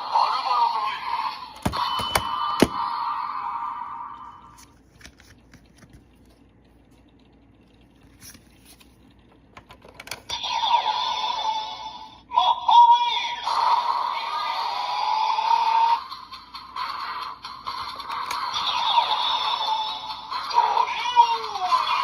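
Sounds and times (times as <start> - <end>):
electronic toy sound effects: 10.3 - 22.0.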